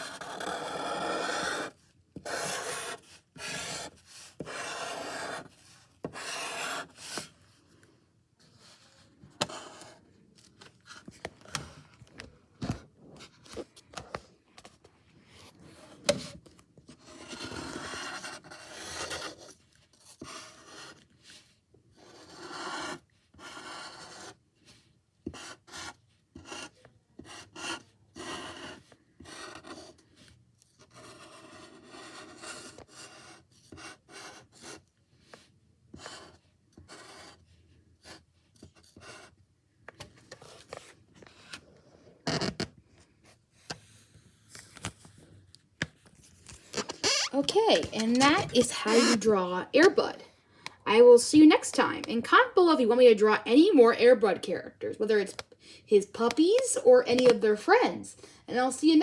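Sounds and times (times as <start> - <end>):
drawing tool scratching on paper: 0.0 - 7.3, 9.4 - 10.0, 16.9 - 24.4, 25.3 - 30.2, 30.8 - 37.4, 38.0 - 39.4, 46.7 - 49.9.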